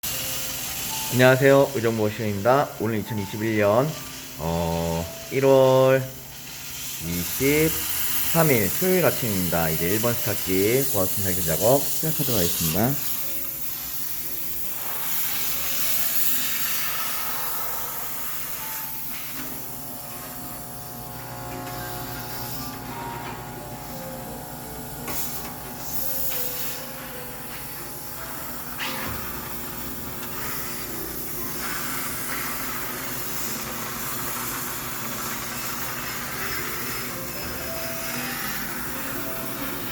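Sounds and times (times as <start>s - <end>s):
background music: 0.0s - 39.9s
steam cleaner hissing: 0.0s - 39.9s.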